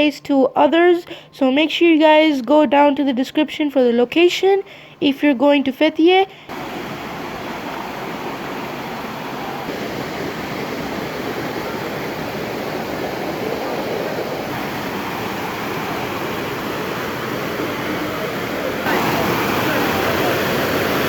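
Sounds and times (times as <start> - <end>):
waterfall rushing water: 6.5 - 21.0.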